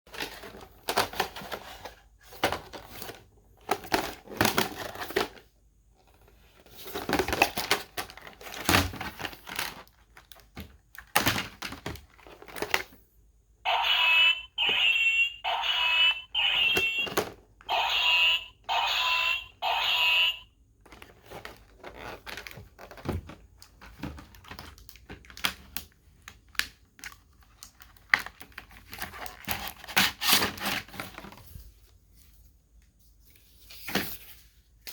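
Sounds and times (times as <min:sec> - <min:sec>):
packaging rustling and crinkling: 0:00.1 - 0:13.0, 0:20.8 - 0:32.4.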